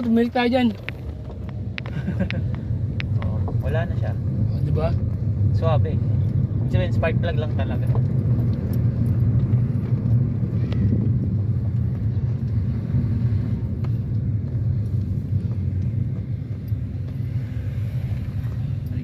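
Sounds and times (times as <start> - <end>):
car engine and road rumble: 0.0 - 19.0.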